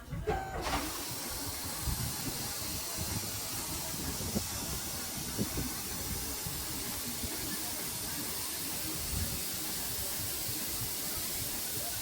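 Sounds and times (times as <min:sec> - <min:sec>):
steady hiss: 0:00.7 - 0:12.0.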